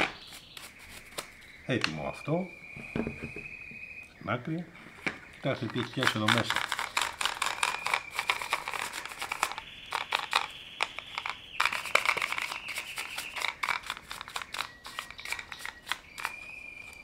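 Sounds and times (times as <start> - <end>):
brush scrubbing saw chain: 5.6 - 16.4.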